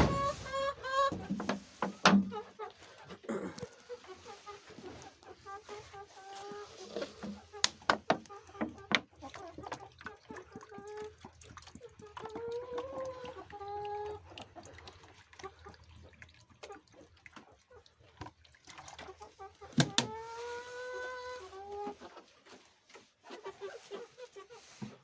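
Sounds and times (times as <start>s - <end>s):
chickens calling: 0.0s - 8.9s, 19.2s - 22.3s, 23.2s - 25.0s.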